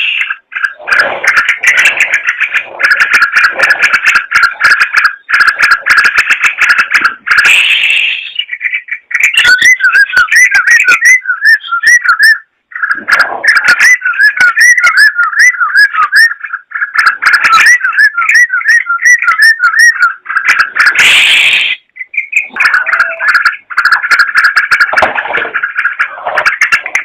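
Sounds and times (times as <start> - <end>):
bird singing bubbling whistles: 0.0 - 27.0.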